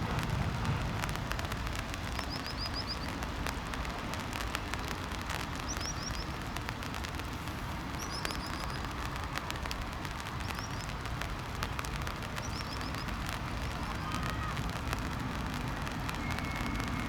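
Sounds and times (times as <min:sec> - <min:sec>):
steady low rumble: 0:00.0 - 0:03.0
faint clicks: 0:00.0 - 0:17.0
small birds chirping: 0:00.7 - 0:17.0.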